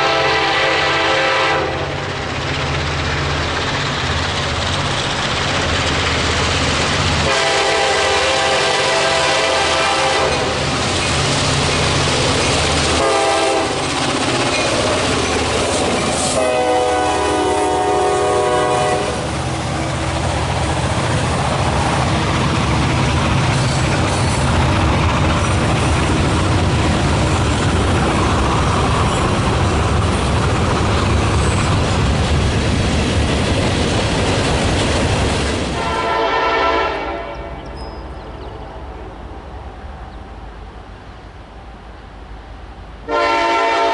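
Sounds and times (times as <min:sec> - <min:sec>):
locomotive air horn blowing: 0:00.0 - 0:02.0, 0:07.2 - 0:10.6, 0:13.0 - 0:13.8, 0:16.2 - 0:19.3, 0:35.8 - 0:37.6, 0:43.1 - 0:43.9
train rumbling on rails: 0:00.0 - 0:43.9.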